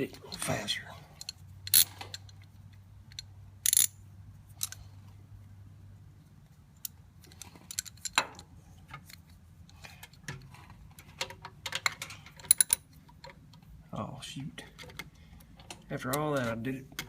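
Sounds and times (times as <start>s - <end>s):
metallic clicks of hand tools: 3.1s - 4.9s, 11.0s - 13.4s.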